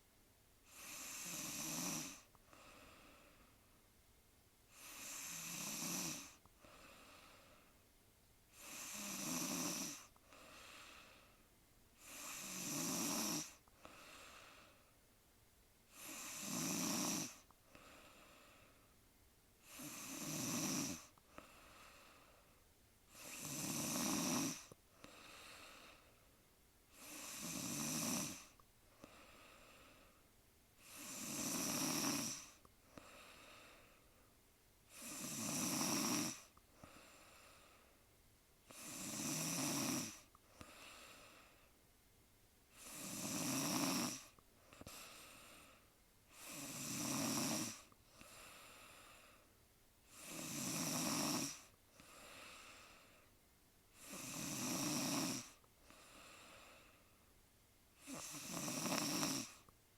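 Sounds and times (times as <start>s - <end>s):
woman snoring: 0.7s - 3.0s, 4.7s - 7.4s, 8.5s - 11.2s, 12.0s - 14.8s, 15.9s - 18.4s, 19.6s - 22.0s, 23.1s - 26.1s, 26.9s - 30.0s, 30.8s - 33.8s, 34.9s - 37.8s, 38.7s - 41.5s, 42.7s - 49.2s, 50.1s - 53.1s, 53.9s - 57.0s, 58.0s - 59.7s
soft short breaths: 10.0s - 11.5s, 13.6s - 15.1s, 21.1s - 22.7s, 36.4s - 38.1s, 40.2s - 41.8s, 44.3s - 46.6s, 47.8s - 49.6s, 51.6s - 54.0s, 55.5s - 57.3s.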